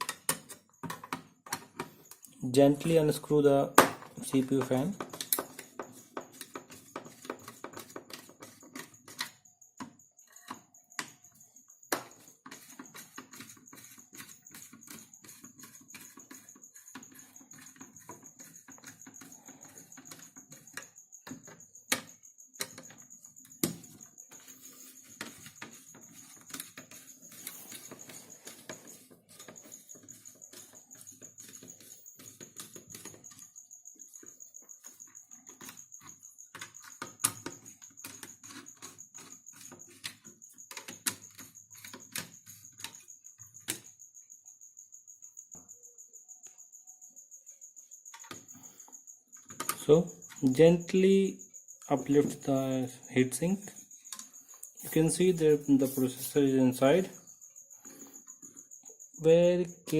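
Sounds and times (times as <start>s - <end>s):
clicks and taps of tools: 0.0s - 2.4s, 3.8s - 11.2s, 49.4s - 50.4s, 54.1s - 55.0s.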